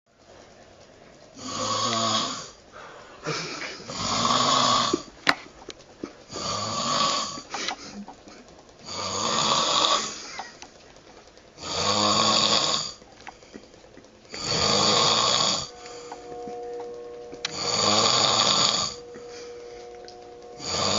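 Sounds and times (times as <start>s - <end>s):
man snoring loudly: 1.4s - 2.6s, 3.8s - 5.1s, 6.3s - 7.5s, 8.8s - 10.2s, 11.6s - 13.0s, 14.4s - 15.9s, 17.4s - 19.3s, 20.5s - 20.9s.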